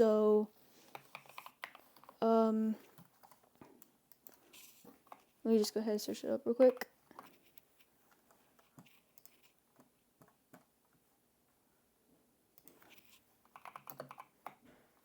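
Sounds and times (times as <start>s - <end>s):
faint keyboard typing: 0.8s - 5.5s, 6.5s - 11.1s, 12.6s - 15.0s.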